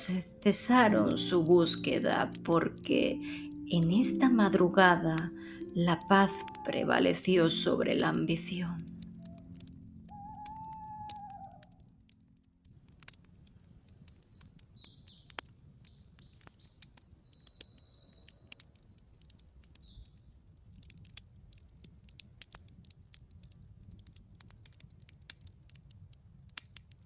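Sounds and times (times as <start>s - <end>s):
songbird singing: 0.0s - 11.8s, 12.7s - 20.2s
campfire crackling and popping: 0.0s - 27.0s.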